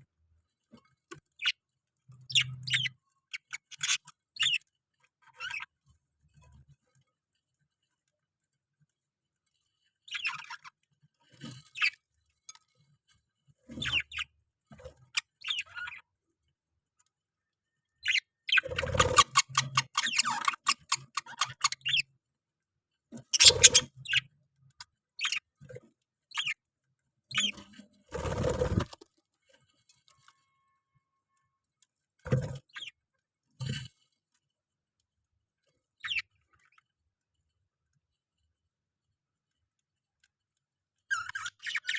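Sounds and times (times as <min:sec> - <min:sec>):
parrots chirping and squawking: 0:15.2 - 0:16.0, 0:18.0 - 0:22.0, 0:23.3 - 0:24.3.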